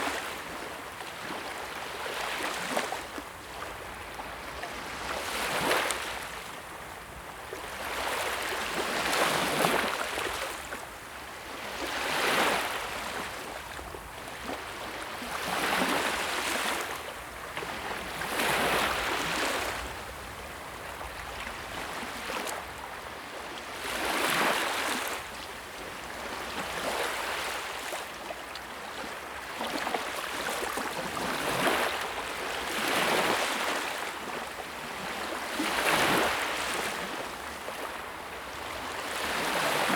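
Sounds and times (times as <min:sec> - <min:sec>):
sea waves breaking on shore: 0:11.5 - 0:39.9.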